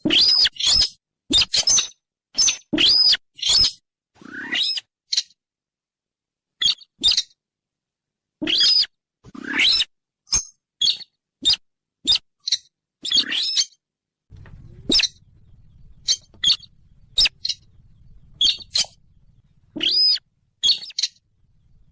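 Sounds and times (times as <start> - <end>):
faint low hum: 14.3 - 21.9
squeaky lure call chirps: 14.9 - 15.2, 16.0 - 17.7, 18.4 - 19.0, 19.8 - 21.2.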